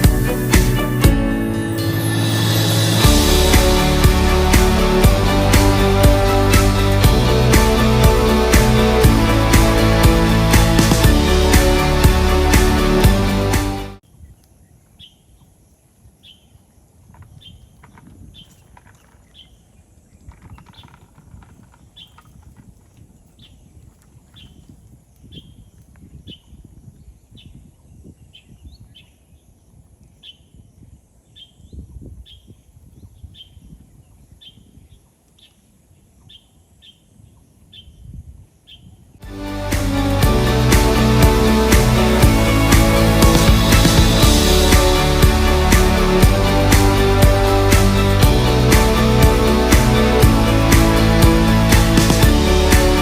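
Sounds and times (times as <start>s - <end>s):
music: 0.0s - 14.0s, 39.2s - 53.0s
bird chirping: 17.2s - 21.2s, 21.8s - 22.4s.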